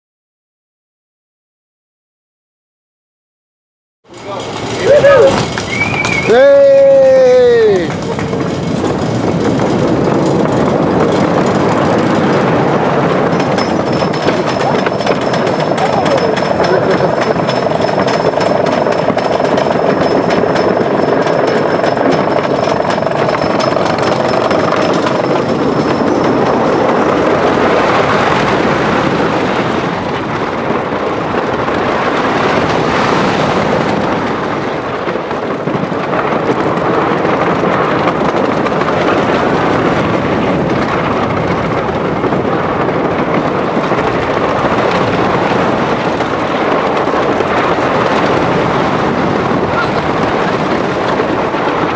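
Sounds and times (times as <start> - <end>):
whine with fast clicking: 4.1 - 28.5
roller coaster rattling rumble: 4.1 - 51.9
rushing noise: 4.1 - 51.9.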